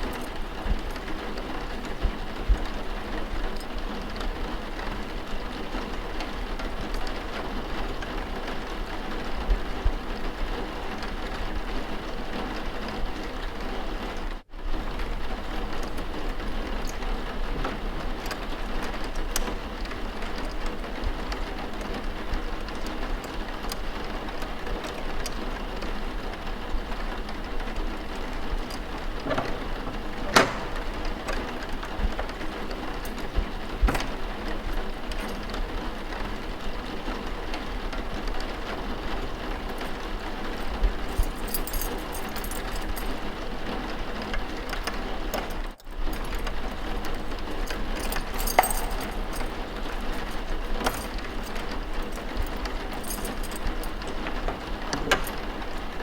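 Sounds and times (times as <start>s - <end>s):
steady rain: 0.0s - 41.4s, 42.3s - 48.3s, 49.2s - 56.0s
sharp knocks: 29.2s - 31.5s.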